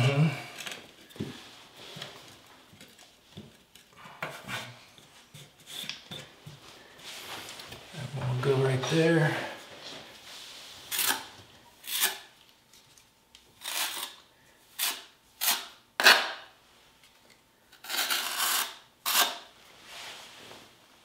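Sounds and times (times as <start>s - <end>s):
trowel scraping through mortar: 13.6s - 14.2s, 17.8s - 19.5s.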